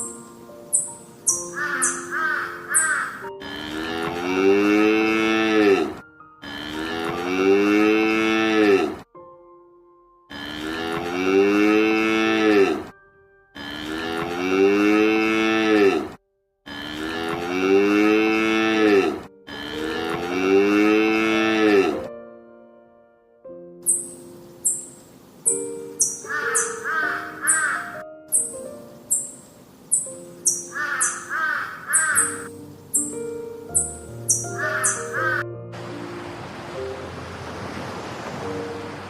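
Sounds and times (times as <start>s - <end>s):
cow mooing: 1.6s - 9.0s, 10.3s - 12.9s, 13.6s - 22.1s, 26.1s - 28.0s, 34.6s - 35.4s.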